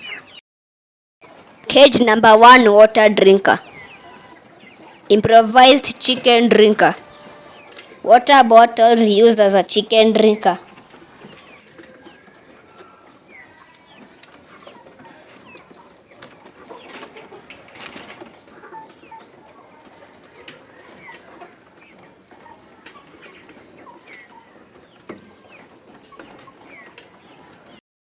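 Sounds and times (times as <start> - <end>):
chickens clucking and cheeping: 0.0 - 0.4, 1.2 - 27.8
rustling: 14.0 - 24.4.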